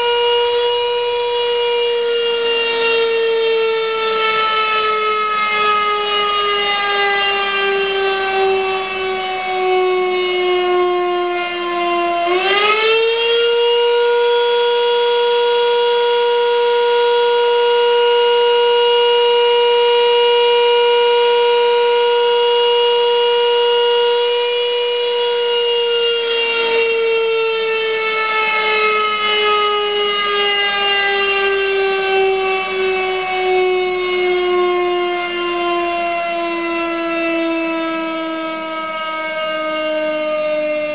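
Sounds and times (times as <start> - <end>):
electric motor siren wailing: 0.0 - 40.9.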